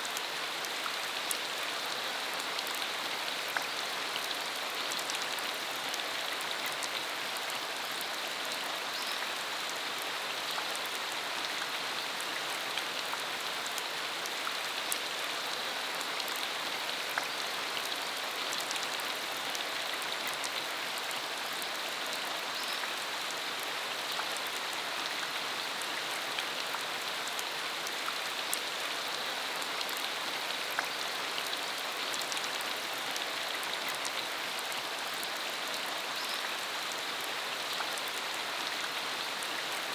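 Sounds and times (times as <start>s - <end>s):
rain falling on dirt road: 0.0s - 39.9s.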